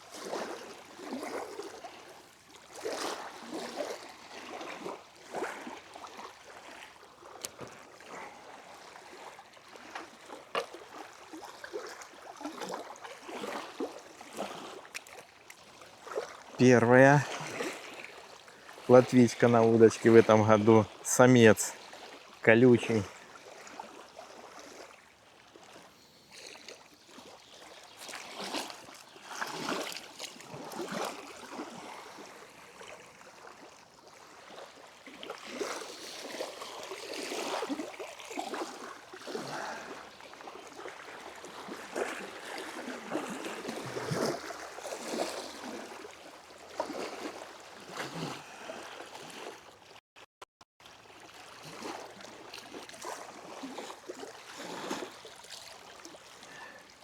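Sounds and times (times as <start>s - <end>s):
water rushing at shore: 0.0s - 50.0s, 50.8s - 57.0s.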